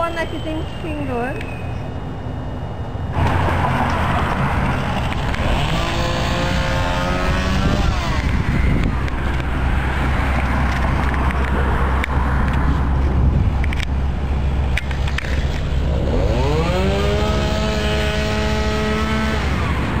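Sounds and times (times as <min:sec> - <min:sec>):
firework whistling whine: 0:00.0 - 0:10.3.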